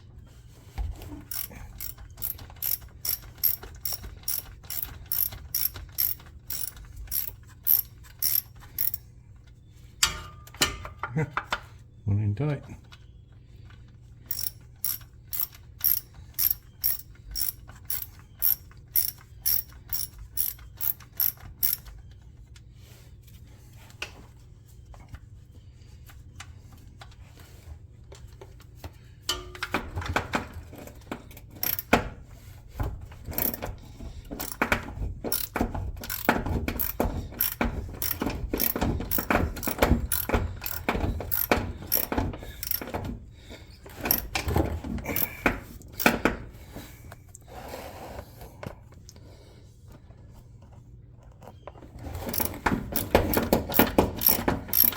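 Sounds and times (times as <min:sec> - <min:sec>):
knocks of tools and parts: 0:01.2 - 0:09.0, 0:33.3 - 0:33.7, 0:34.3 - 0:43.1, 0:43.9 - 0:46.4, 0:52.3 - 0:54.9
ratchet wrench clicking: 0:01.3 - 0:09.0, 0:14.3 - 0:21.9, 0:31.6 - 0:31.9, 0:33.4 - 0:33.6, 0:34.3 - 0:34.7, 0:35.3 - 0:42.9, 0:43.9 - 0:44.4, 0:45.2 - 0:45.4, 0:46.0 - 0:46.2, 0:52.3 - 0:54.9.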